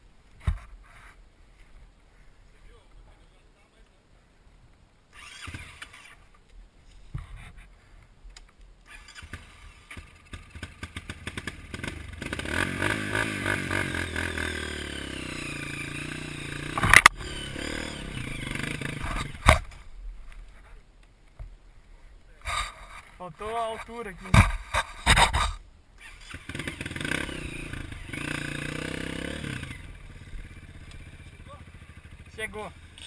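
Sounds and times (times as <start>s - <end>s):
motorcycle engine revving: 8.9s - 19.7s, 24.8s - 33.0s.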